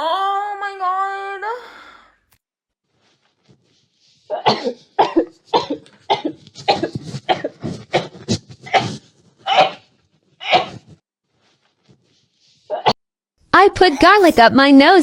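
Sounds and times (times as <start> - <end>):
person sneezing: 13.8 - 14.5.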